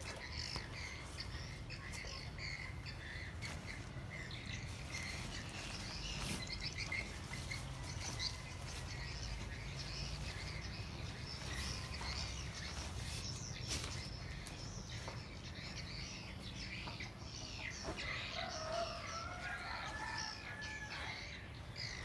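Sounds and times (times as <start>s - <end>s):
small birds chirping: 0.0s - 22.0s
distant rooster crowing: 17.7s - 21.7s.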